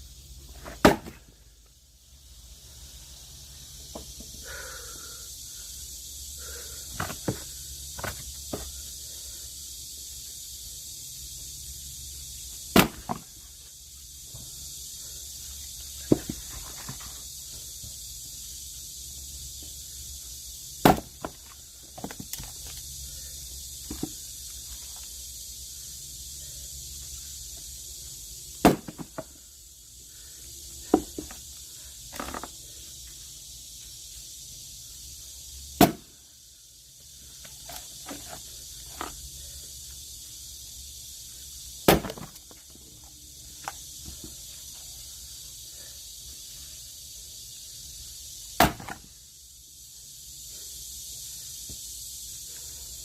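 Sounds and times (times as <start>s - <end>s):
axe strikes splitting logs: 0.6s - 1.2s, 12.7s - 13.3s, 16.0s - 16.8s, 20.8s - 22.2s, 28.6s - 29.3s, 35.8s - 36.1s, 41.8s - 42.5s, 48.6s - 49.1s.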